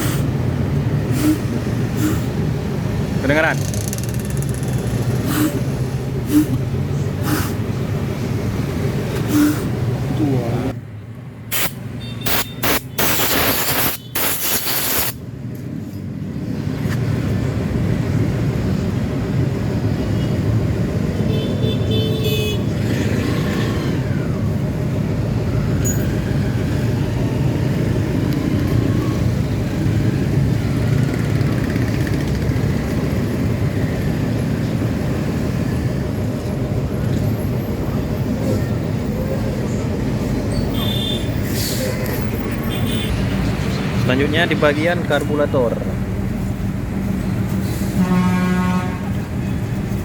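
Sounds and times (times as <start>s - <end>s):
two-stroke motorcycle engine running: 3.5s - 5.3s, 30.7s - 33.5s.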